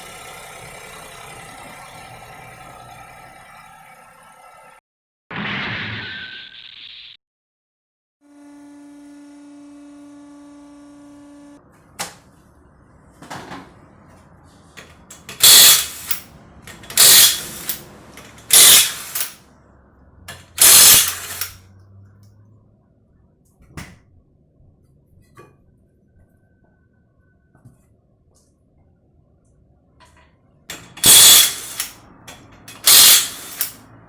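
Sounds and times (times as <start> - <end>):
impact wrench bursts: 14.8 - 19.4, 20.3 - 21.6, 30.7 - 34.0
tool clicks: 14.8 - 19.4, 20.3 - 21.6, 30.7 - 33.8.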